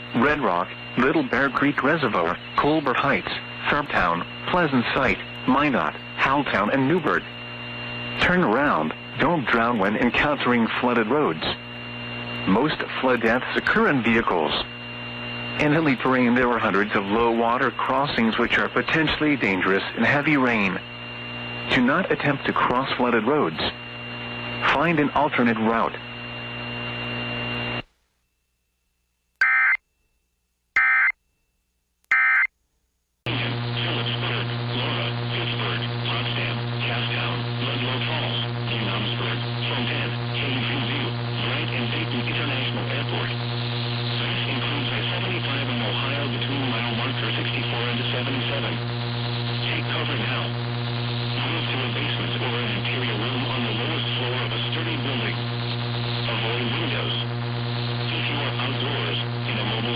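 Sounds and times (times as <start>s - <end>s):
loud hum-laden noise: 0.0s - 27.8s, 33.3s - 59.9s
electrical hum: 0.0s - 29.8s, 32.0s - 59.9s
short data bursts: 30.8s - 31.2s, 32.1s - 32.5s.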